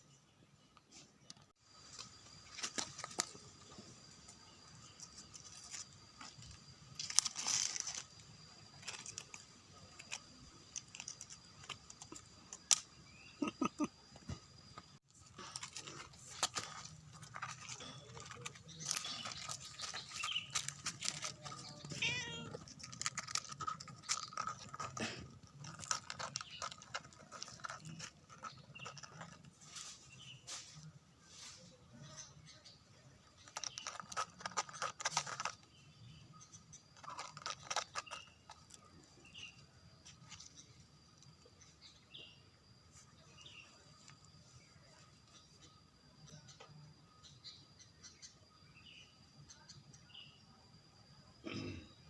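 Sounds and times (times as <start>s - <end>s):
small clicks and rustles: 5.0s - 12.8s, 14.8s - 30.0s, 33.3s - 35.8s, 36.5s - 41.3s
cat meowing: 21.9s - 22.6s.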